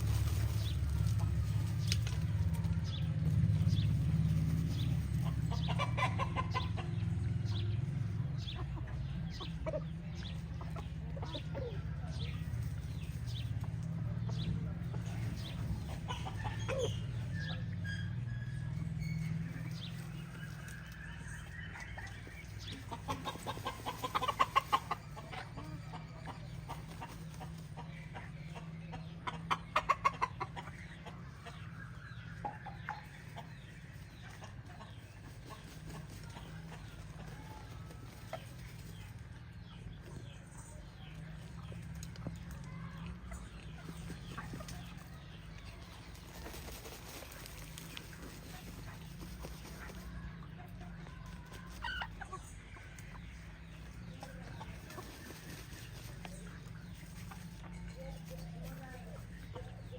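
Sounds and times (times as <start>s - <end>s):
chickens clucking: 0.0s - 59.9s
low steady rumble: 0.0s - 59.9s.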